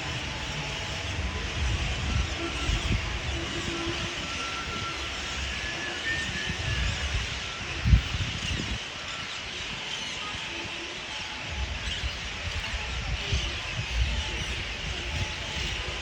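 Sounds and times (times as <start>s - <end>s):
low rumbling: 0.0s - 8.8s
flock of birds chattering: 0.0s - 16.0s.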